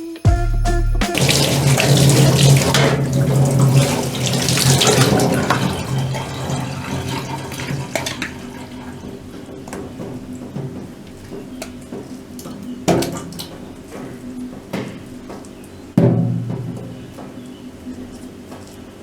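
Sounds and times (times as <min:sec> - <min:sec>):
background music: 0:00.0 - 0:04.2
water running: 0:01.0 - 0:19.0.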